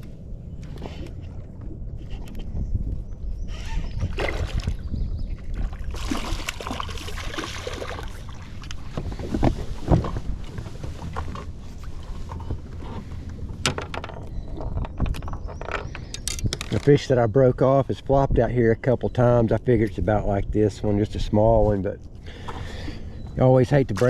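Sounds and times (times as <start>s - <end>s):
water splashing: 4.0s - 10.2s.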